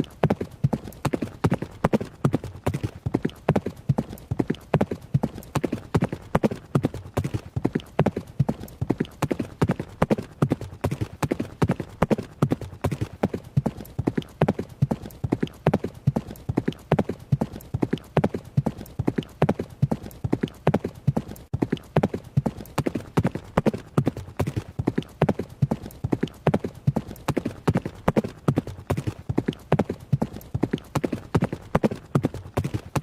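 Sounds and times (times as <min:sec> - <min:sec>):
horse hooves on hard ground: 0:00.0 - 0:33.0.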